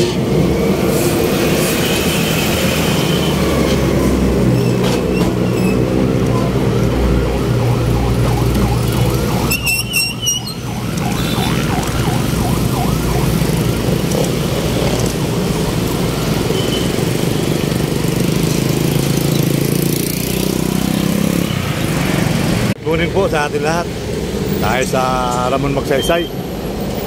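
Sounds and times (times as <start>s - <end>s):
road traffic: 0.0s - 27.0s.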